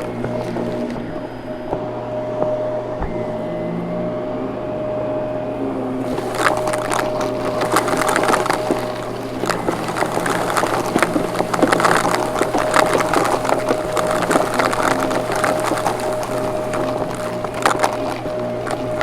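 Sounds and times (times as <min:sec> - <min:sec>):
vacuum cleaner motor whine: 0:00.0 - 0:06.1
irregular crackling clicks: 0:06.0 - 0:19.0.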